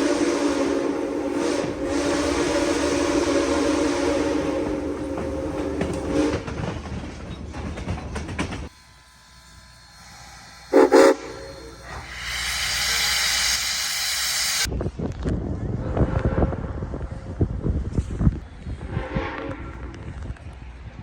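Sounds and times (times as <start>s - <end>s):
steam whistle chord: 0.0s - 6.4s, 10.7s - 11.9s
steam hiss: 0.0s - 7.6s, 8.4s - 14.7s
locomotive rumble and clatter: 1.5s - 8.7s.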